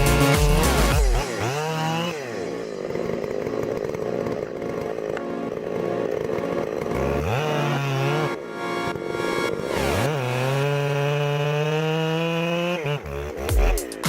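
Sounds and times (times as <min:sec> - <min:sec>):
chainsaw cutting wood: 0:00.0 - 0:14.0
chainsaw revving: 0:00.0 - 0:14.0.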